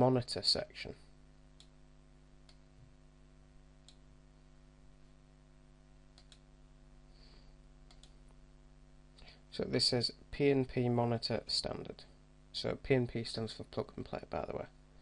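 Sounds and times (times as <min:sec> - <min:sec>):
low electrical hum: 0:00.0 - 0:15.0
computer mouse clicks: 0:06.1 - 0:06.5, 0:07.9 - 0:08.2.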